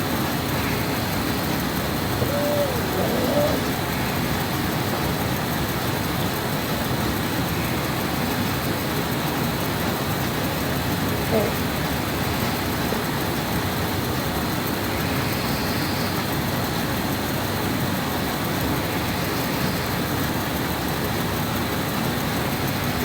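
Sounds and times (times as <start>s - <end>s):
woman snoring: 2.2s - 3.7s.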